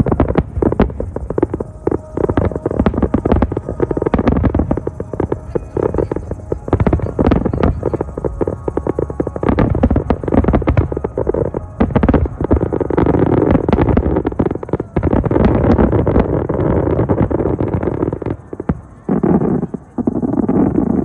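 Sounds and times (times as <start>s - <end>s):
fireworks crackling and banging: 0.0s - 21.0s.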